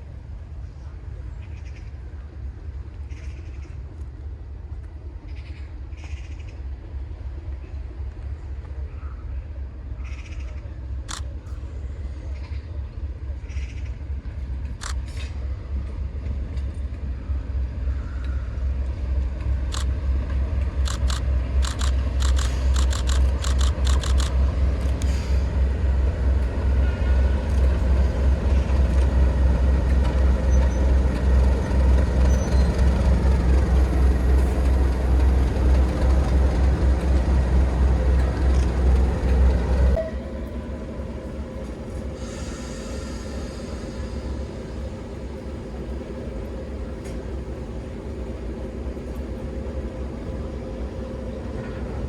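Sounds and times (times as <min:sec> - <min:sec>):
diesel locomotive engine throbbing: 0:00.0 - 0:52.0
sharp clicks: 0:20.8 - 0:25.2.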